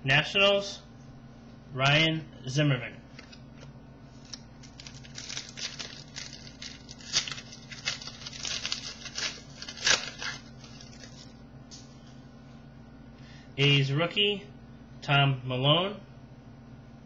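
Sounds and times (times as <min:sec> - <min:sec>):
wrapper torn and crinkled: 0:04.1 - 0:11.4.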